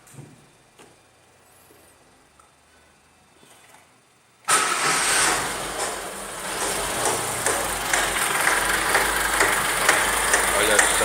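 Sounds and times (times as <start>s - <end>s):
car engine starting and running: 4.4s - 11.0s
engine ticking noise: 6.6s - 11.0s.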